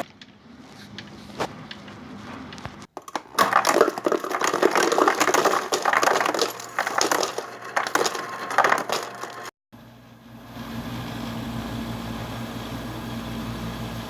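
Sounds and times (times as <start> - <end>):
crunching and crackling: 0.0 - 9.5.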